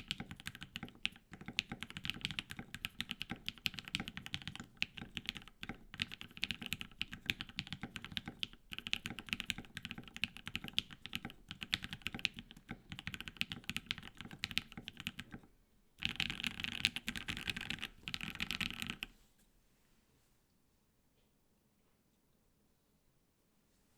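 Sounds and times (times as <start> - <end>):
mechanical keyboard typing: 0.0 - 19.1.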